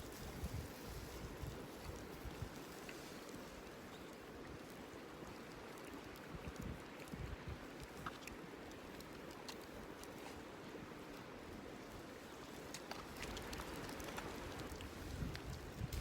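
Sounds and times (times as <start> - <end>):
wind rumble on microphone: 0.0 - 3.7, 4.3 - 8.2, 10.9 - 16.0.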